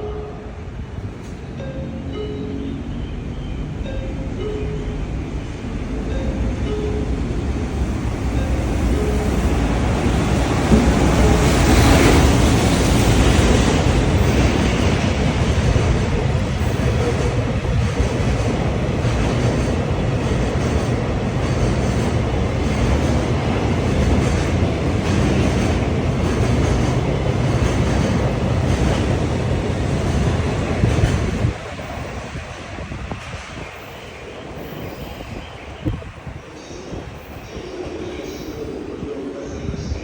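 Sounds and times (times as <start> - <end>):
freight train rumbling past: 0.0 - 40.0.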